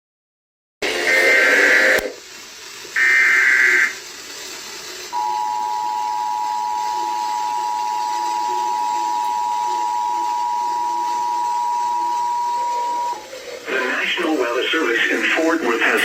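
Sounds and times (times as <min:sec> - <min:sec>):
radio static hiss: 0:00.8 - 0:02.3, 0:03.0 - 0:04.1, 0:05.2 - 0:16.0
two-tone alert signal: 0:05.2 - 0:13.2.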